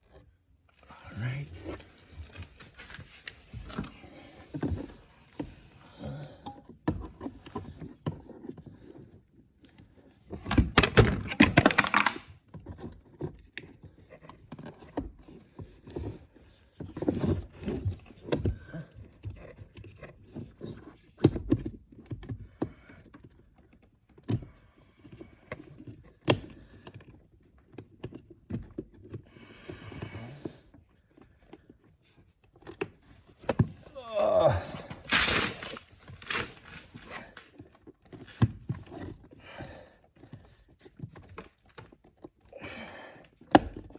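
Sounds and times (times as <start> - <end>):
rustling and scraping: 0.0 - 5.8, 34.5 - 39.4
plastic knocks and clicks: 10.4 - 12.3.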